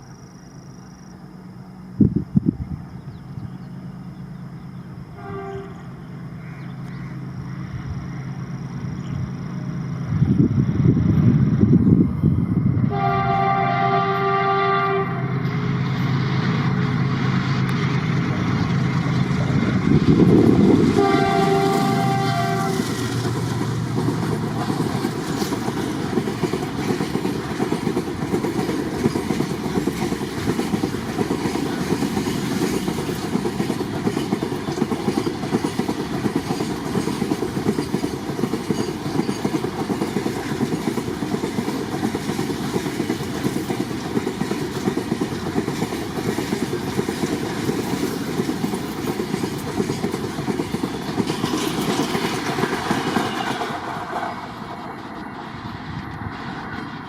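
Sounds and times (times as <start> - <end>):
train wheels clattering on rails: 15.4 - 57.0.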